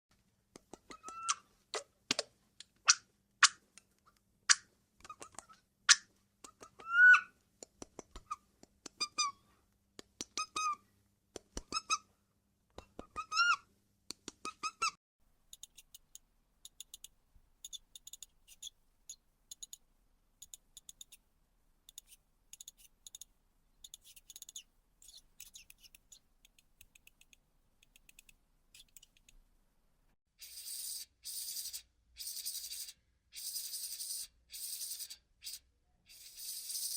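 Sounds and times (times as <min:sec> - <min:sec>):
mouse squeaks: 0:00.9 - 0:01.9, 0:06.7 - 0:07.3, 0:09.0 - 0:09.4, 0:10.4 - 0:10.8, 0:11.6 - 0:12.0, 0:13.0 - 0:13.6, 0:15.6 - 0:19.8, 0:20.4 - 0:21.2, 0:21.9 - 0:29.4, 0:30.4 - 0:36.9
faint high rapid chirps: 0:21.9 - 0:29.3, 0:30.4 - 0:36.9.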